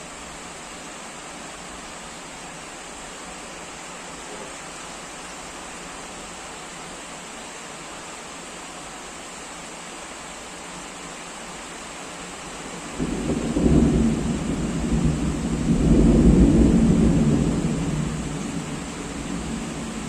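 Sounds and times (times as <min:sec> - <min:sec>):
rain hiss: 0:00.0 - 0:20.0
thunder rumble: 0:12.9 - 0:20.0.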